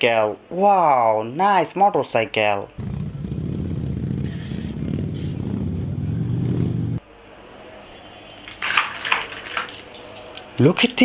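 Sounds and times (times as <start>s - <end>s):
motorcycle engine running: 2.8s - 7.0s
rustling: 8.1s - 11.0s.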